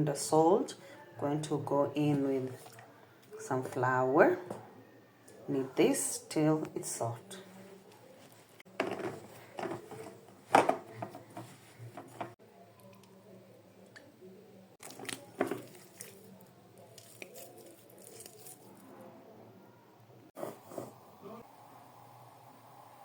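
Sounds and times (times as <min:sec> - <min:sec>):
dough squishing and slapping: 0:14.8 - 0:18.8.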